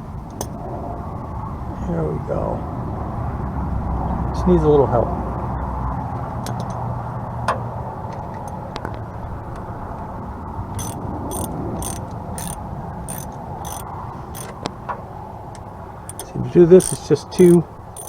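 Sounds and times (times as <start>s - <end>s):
steady background hum: 0.0s - 18.0s
ratchet wrench clicking: 10.8s - 14.5s, 16.1s - 18.0s.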